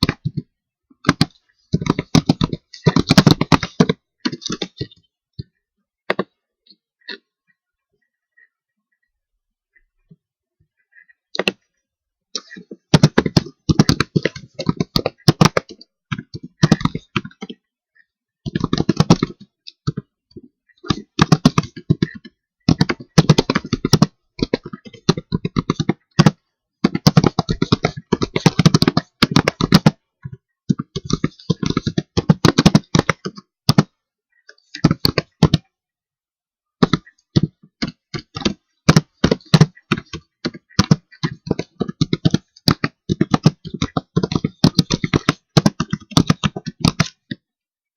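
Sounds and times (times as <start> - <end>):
typing on keyboard: 0.0 - 5.0, 12.4 - 17.6, 18.4 - 35.7, 36.8 - 47.5.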